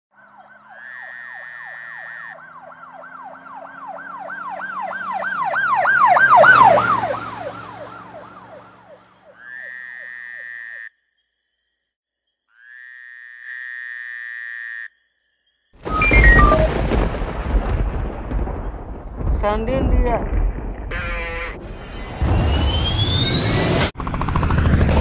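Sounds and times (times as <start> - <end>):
emergency siren yelping: 0.1 - 9.4, 15.8 - 17.2, 20.9 - 25.0
horn blasts: 20.9 - 21.8.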